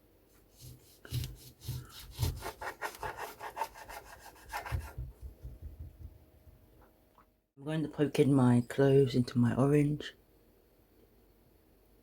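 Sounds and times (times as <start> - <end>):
scraping strokes on an orange: 0.4 - 5.0.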